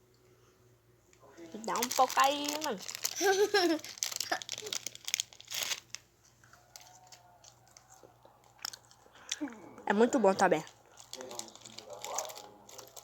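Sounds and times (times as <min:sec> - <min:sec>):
plastic wrapper crinkling: 0:01.4 - 0:09.0, 0:10.5 - 0:13.0.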